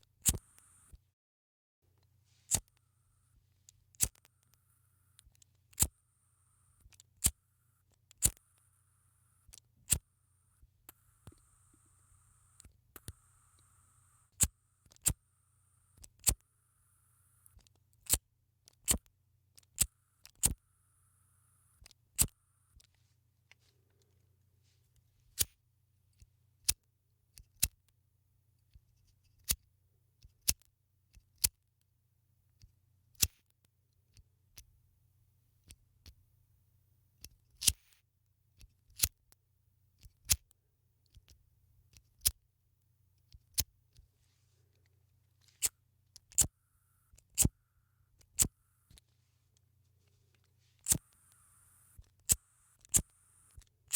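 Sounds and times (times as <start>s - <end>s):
lighter clicking: 50.8s - 53.9s.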